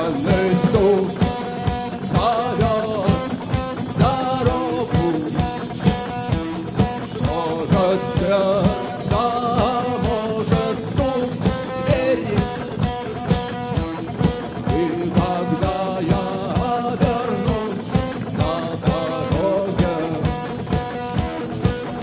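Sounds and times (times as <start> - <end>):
person singing: 0.0 - 5.6, 7.2 - 12.8, 14.6 - 20.5
electric guitars: 0.0 - 22.0
steady drum beat: 0.0 - 22.0.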